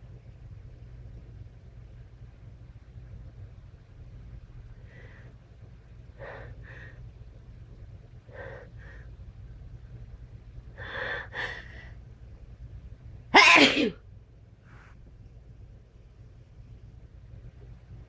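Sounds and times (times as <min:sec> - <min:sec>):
loud sneeze: 0:13.4 - 0:14.0.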